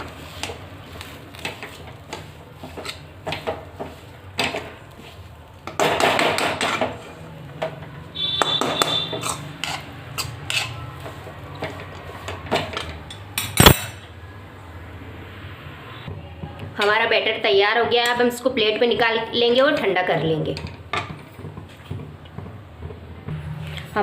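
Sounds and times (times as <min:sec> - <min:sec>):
spoon scraping metal pan: 0:00.0 - 0:07.2, 0:08.2 - 0:14.0.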